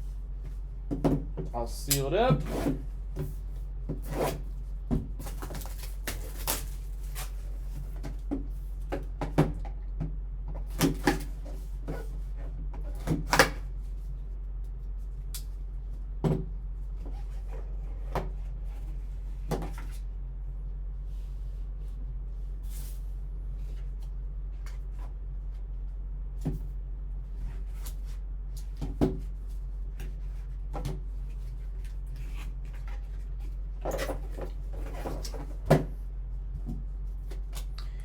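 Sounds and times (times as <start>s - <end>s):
low electrical hum: 0.0s - 38.0s
handling cardboard and plastic packaging: 5.1s - 8.0s.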